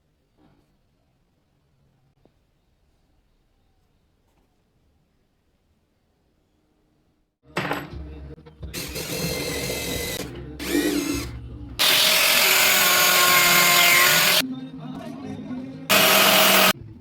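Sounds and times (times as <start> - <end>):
power tool motor whining: 8.8 - 14.4, 15.9 - 16.7.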